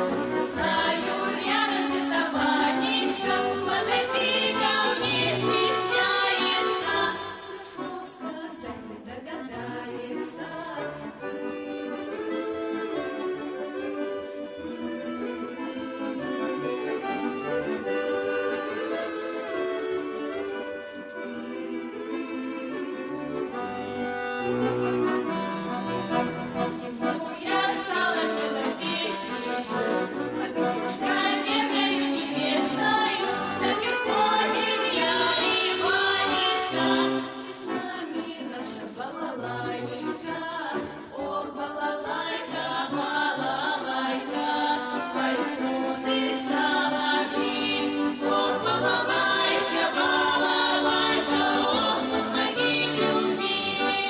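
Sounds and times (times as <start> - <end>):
group of voices singing: 0.0 - 11.5, 15.9 - 22.1, 26.2 - 54.0
accordion playing: 0.0 - 54.0.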